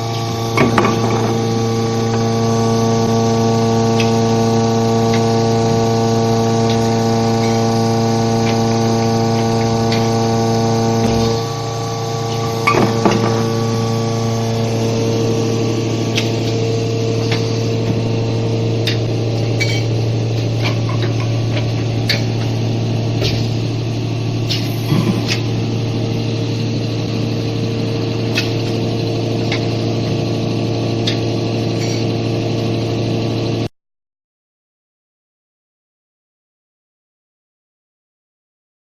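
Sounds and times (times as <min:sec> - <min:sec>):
machine motor hum: 0:00.0 - 0:33.7
mechanism clicks and knocks: 0:12.4 - 0:13.5.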